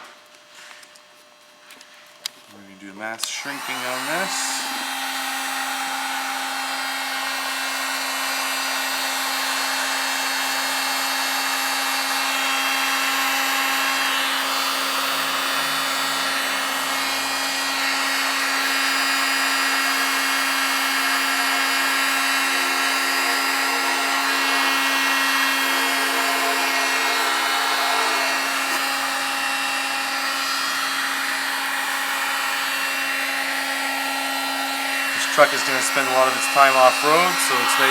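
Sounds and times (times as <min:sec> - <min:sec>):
heat gun fan hum: 0:02.2 - 0:37.9
hot air hissing: 0:03.3 - 0:07.4, 0:13.0 - 0:33.8, 0:35.0 - 0:37.9.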